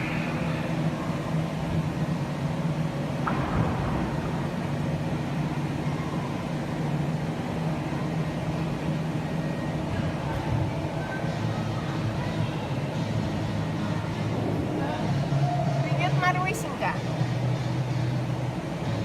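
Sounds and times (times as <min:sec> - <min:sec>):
low machine hum: 0:00.0 - 0:19.0.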